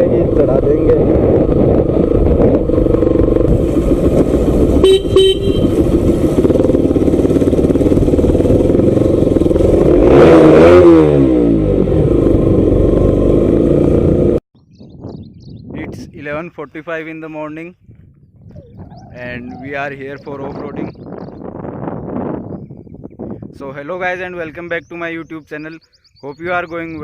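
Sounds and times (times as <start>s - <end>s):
wind rumble on microphone: 0.0s - 13.3s, 14.0s - 16.6s, 17.4s - 27.0s
motorcycle engine running: 0.0s - 14.4s
short horn beep: 4.8s - 5.8s.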